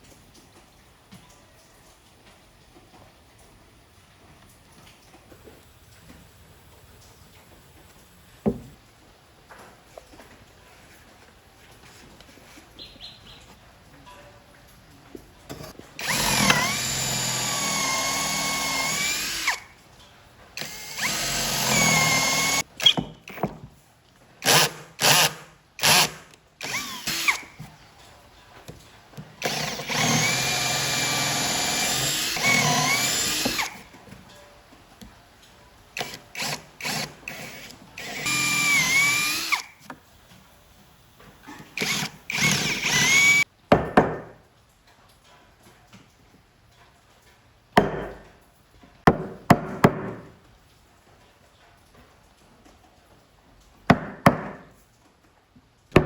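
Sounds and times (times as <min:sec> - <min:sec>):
electric drill whining: 0:16.0 - 0:19.7, 0:20.6 - 0:22.6, 0:24.4 - 0:27.6, 0:29.4 - 0:33.8, 0:36.0 - 0:39.7, 0:41.7 - 0:43.4.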